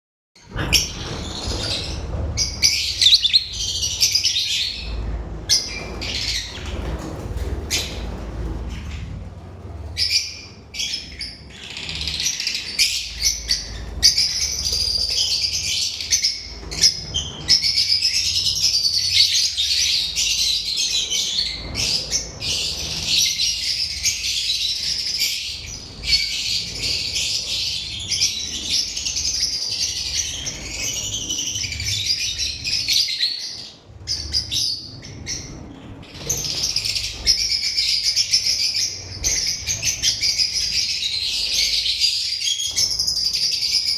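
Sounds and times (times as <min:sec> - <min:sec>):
birds chirping and chattering: 0:00.4 - 0:43.9.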